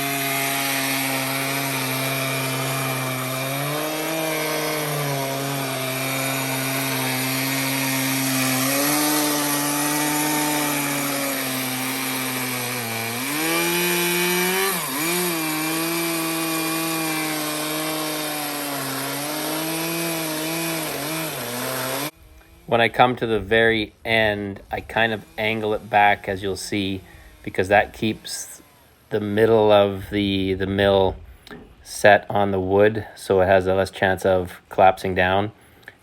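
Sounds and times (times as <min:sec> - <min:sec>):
chainsaw cutting log: 0:00.0 - 0:31.7.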